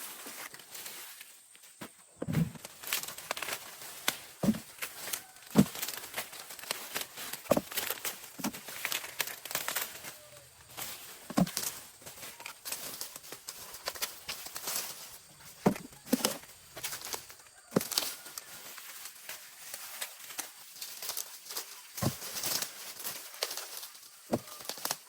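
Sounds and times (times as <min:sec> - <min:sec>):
dry leaves crinkling: 0:00.0 - 0:25.0
dull thumps: 0:02.2 - 0:02.7, 0:04.4 - 0:04.7, 0:05.6 - 0:05.9, 0:07.5 - 0:08.6, 0:11.3 - 0:11.7, 0:15.6 - 0:16.3, 0:22.0 - 0:22.3.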